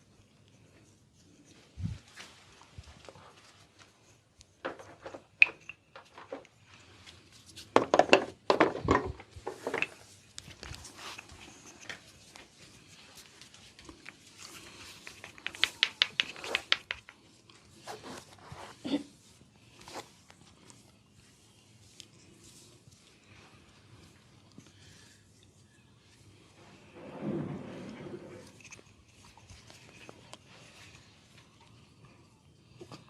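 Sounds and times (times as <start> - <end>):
hands slapping oiled skin: 15.2 - 17.2.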